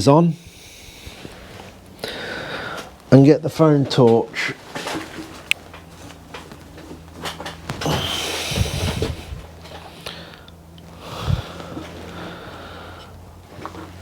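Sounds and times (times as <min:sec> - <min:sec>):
faint low hum: 0:00.0 - 0:14.0
rustle of things moved: 0:03.7 - 0:14.0.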